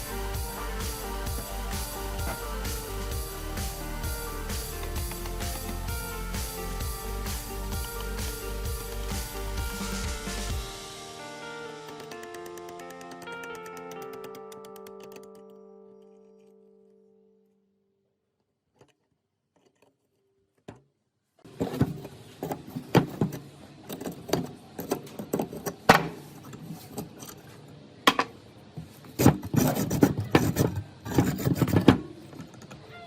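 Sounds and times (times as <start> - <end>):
scraping and rubbing metal parts: 21.4 - 27.8, 28.8 - 32.8.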